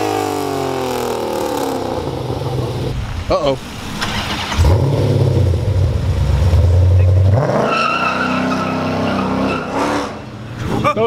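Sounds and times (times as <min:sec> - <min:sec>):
car engine revving hard: 0:00.0 - 0:03.0, 0:04.2 - 0:10.3
tyres squealing: 0:07.6 - 0:10.3.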